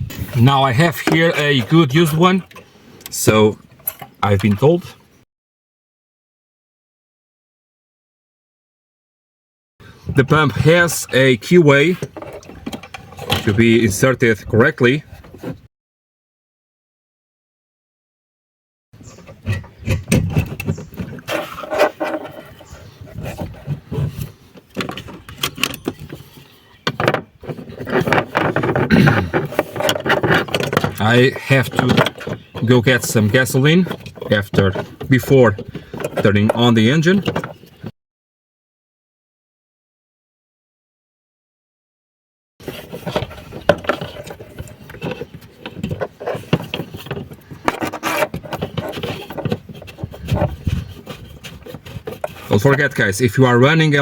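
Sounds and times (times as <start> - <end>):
hands handling parts and tools: 0.0 - 3.2, 19.0 - 37.9, 42.6 - 53.8.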